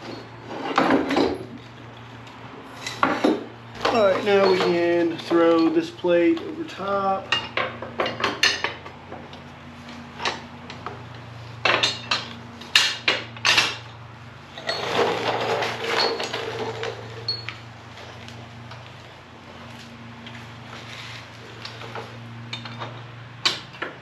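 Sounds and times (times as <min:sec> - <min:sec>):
metal scraping and rattling: 0:00.0 - 0:01.9, 0:02.7 - 0:11.0, 0:11.6 - 0:18.4.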